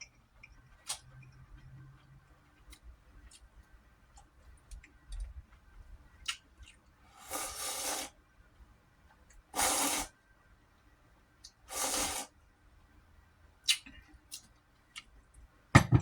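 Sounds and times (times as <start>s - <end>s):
slurping noodles: 7.1s - 8.2s, 9.6s - 10.1s, 11.7s - 12.4s.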